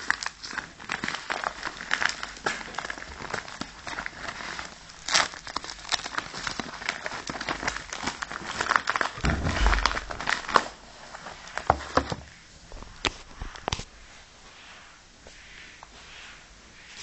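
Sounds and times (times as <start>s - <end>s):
packaging crinkling: 0.0s - 10.7s
low thump: 9.2s - 10.6s.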